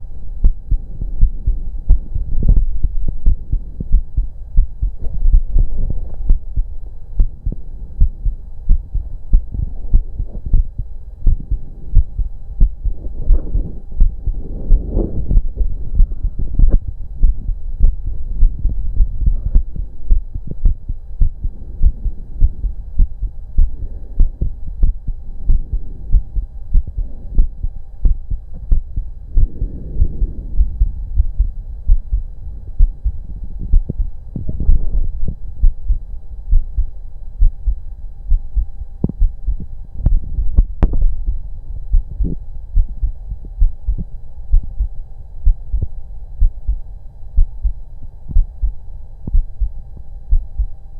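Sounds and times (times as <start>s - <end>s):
heartbeat through stethoscope: 0.0s - 50.8s.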